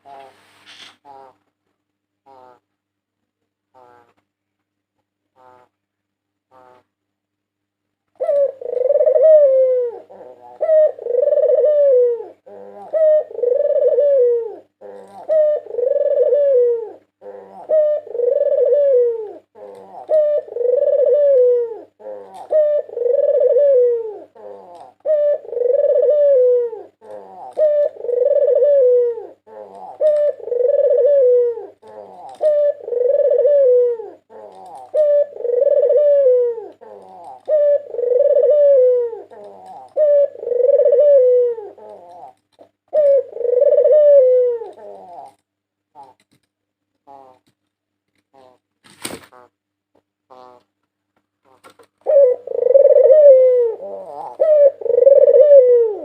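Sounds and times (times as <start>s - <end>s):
dove cooing: 0.0s - 0.4s, 8.2s - 46.4s, 47.0s - 47.5s, 48.3s - 48.6s, 50.3s - 50.7s, 51.5s - 56.0s.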